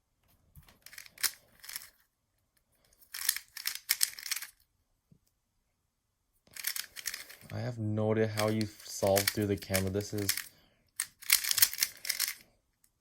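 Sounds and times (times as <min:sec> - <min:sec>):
puzzle cube clacking rapidly: 0:00.8 - 0:02.0, 0:03.1 - 0:04.6, 0:06.5 - 0:07.5, 0:08.4 - 0:12.4.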